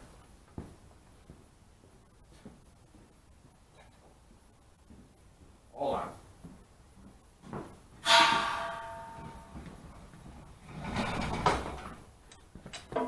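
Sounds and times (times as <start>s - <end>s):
metal object clanking: 8.0s - 13.0s.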